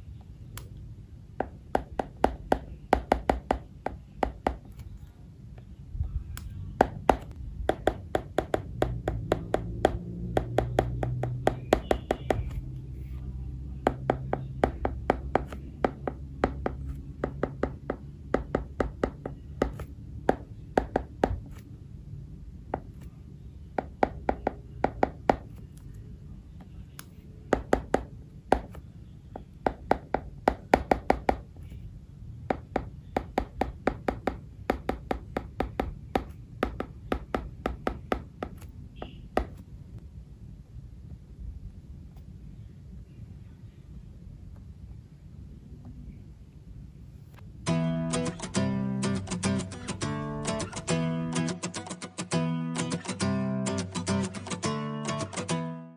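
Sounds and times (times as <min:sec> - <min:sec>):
steady low hum: 0:00.0 - 0:51.4
stylus tapping on glass screen: 0:06.8 - 0:12.5.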